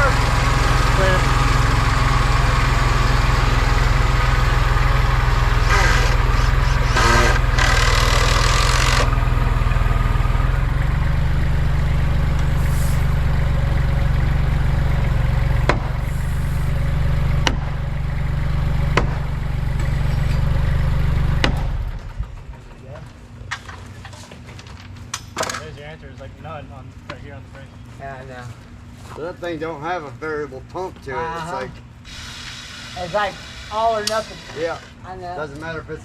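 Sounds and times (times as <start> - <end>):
tractor diesel engine running: 0.0 - 23.4
sharp knocks: 15.5 - 16.5, 17.3 - 18.0, 18.8 - 20.5, 21.2 - 22.1.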